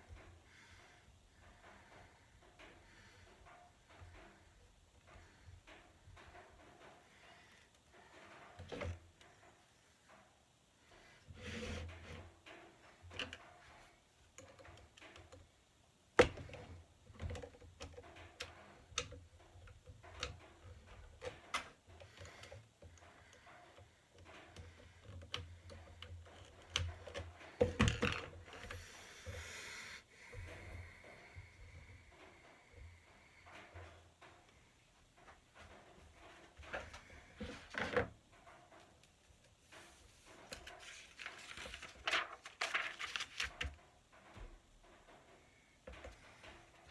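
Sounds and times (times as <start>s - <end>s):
small parts clicking and rattling: 11.8s - 29.6s.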